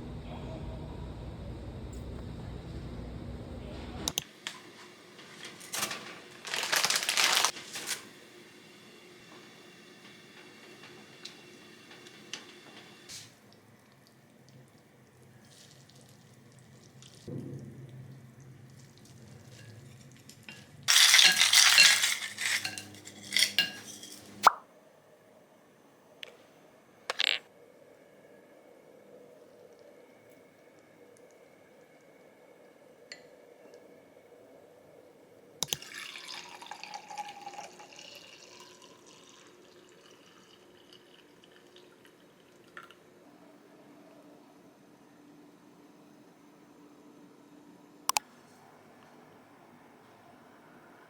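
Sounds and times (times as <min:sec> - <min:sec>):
wrapper crinkling rustle: 0:05.2 - 0:08.1, 0:20.9 - 0:24.2
dishes and cutlery clattering: 0:20.5 - 0:24.4.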